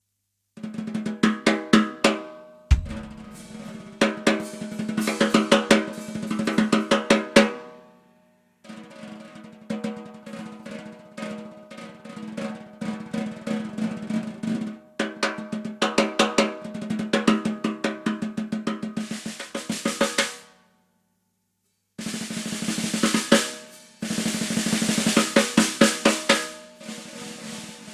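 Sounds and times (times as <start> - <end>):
low thump: 2.7 - 3.6
snare drum strokes and rolls: 2.7 - 5.9.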